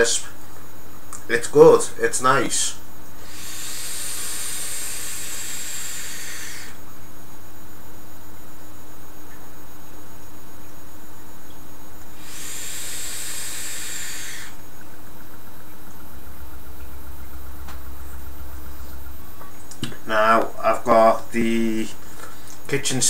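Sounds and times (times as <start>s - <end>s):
steady low hum: 0.0s - 23.0s
e-cigarette hissing: 3.2s - 6.8s, 12.1s - 14.7s.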